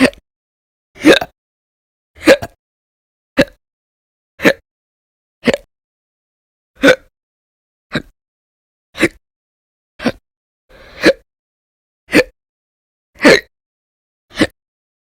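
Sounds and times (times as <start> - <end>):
woman hiccuping: 1.0 - 1.3.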